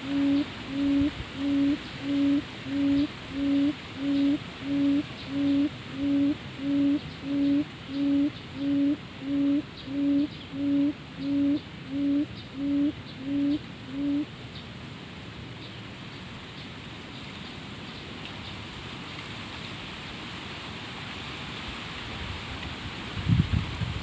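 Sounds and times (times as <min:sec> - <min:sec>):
quail hooting: 0:00.0 - 0:14.3.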